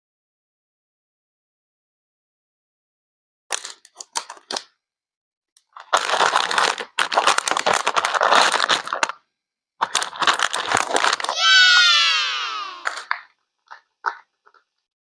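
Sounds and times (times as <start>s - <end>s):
crackling crunching noise: 5.6s - 11.4s, 12.7s - 14.9s.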